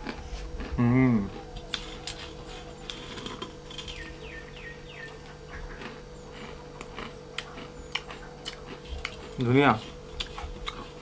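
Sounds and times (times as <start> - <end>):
crunchy snack being chewed: 0.0 - 4.4, 5.0 - 11.0
bird chirping: 1.3 - 9.3.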